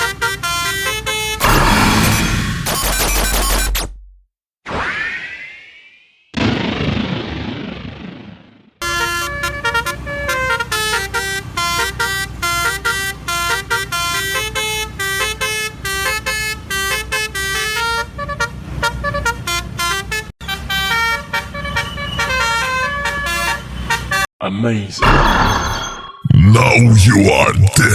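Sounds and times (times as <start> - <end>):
multi-tone musical horn melody: 0.0 - 1.5, 8.8 - 24.3.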